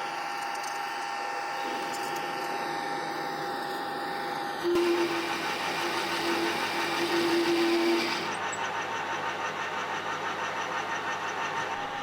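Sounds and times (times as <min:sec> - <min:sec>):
lathe turning metal stock: 0:04.6 - 0:08.7.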